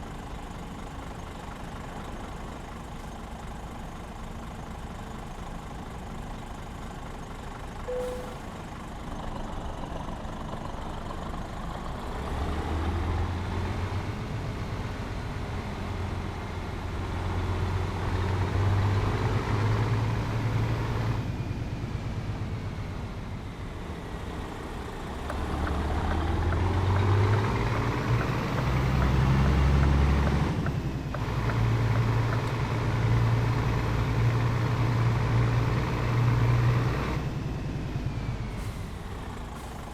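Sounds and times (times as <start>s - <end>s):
truck engine revving: 12.0s - 39.7s.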